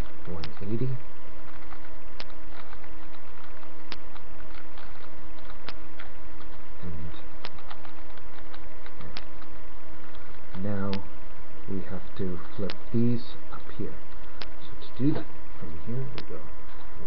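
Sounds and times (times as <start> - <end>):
low electrical hum: 0.0 - 17.0
microphone hiss: 0.0 - 17.0.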